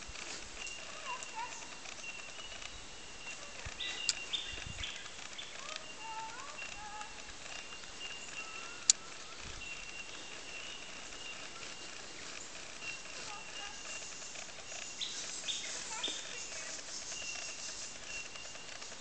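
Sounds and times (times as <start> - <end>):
birds chirping: 0.0 - 19.0.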